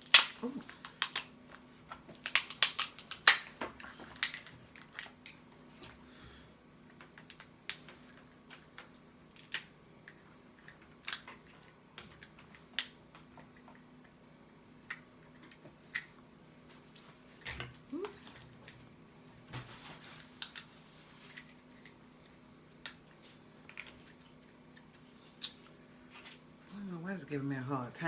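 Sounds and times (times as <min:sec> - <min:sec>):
shellfish shell cracking: 0:00.0 - 0:01.3, 0:02.1 - 0:05.4, 0:09.3 - 0:13.0.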